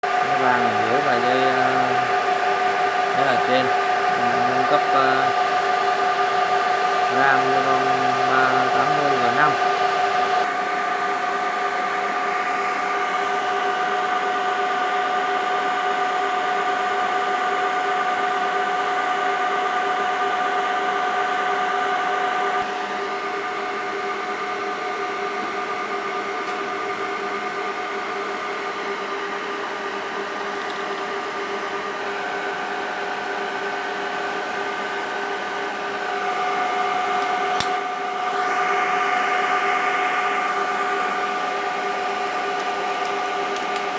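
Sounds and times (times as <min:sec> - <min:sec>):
server cooling fans whirring: 0:00.0 - 0:43.9
sharp click: 0:37.2 - 0:37.8.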